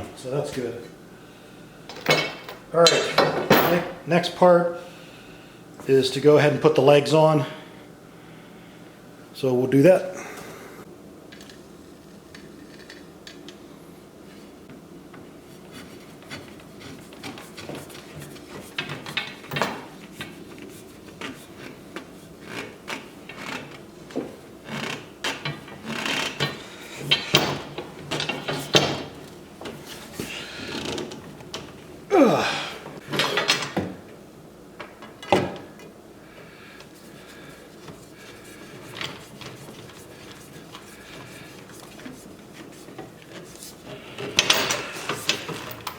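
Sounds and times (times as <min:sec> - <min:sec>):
metal pipes clanking and scraping: 0:01.9 - 0:04.0.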